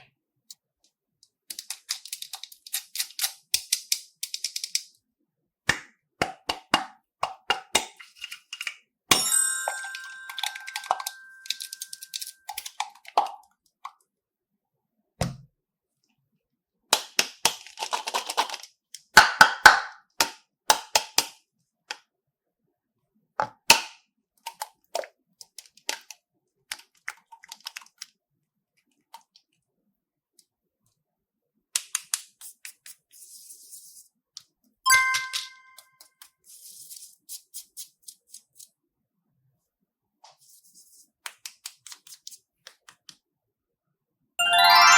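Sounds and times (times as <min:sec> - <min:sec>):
short ringing clink: 0:09.1 - 0:12.3.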